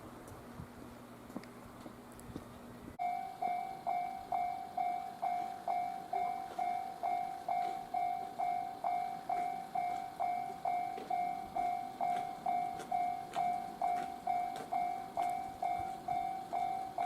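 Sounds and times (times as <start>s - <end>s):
standing train humming: 0.0s - 17.0s
level crossing warning bell: 3.0s - 17.0s.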